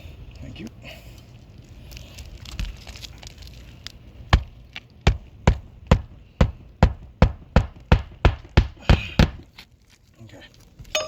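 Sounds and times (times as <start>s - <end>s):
hammer hitting nail into shingle: 4.3s - 9.4s.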